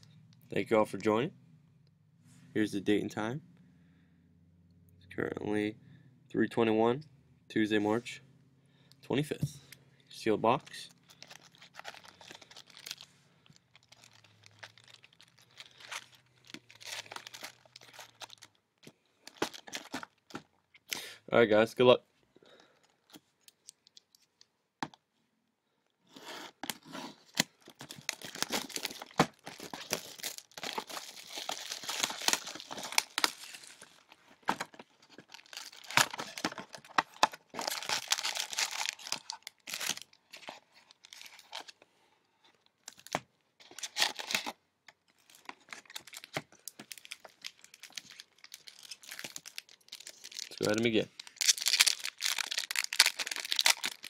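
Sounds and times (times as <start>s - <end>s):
plastic wrapping tearing and crinkling: 11.0s - 18.6s, 19.2s - 20.4s, 27.2s - 41.7s, 42.8s - 54.0s.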